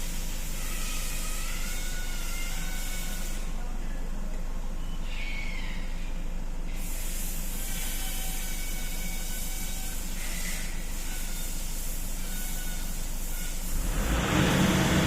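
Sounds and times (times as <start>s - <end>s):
loud hiss of air or spray: 0.0s - 3.5s, 6.7s - 15.0s
diesel engine idling: 13.6s - 15.0s.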